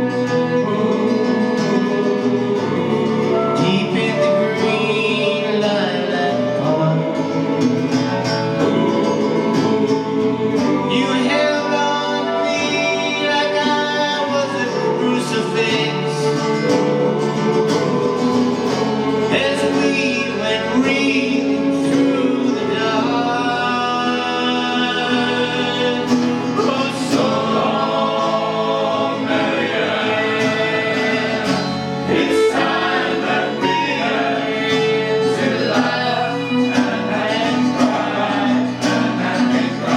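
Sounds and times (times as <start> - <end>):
voices singing with accompaniment: 0.0 - 39.9.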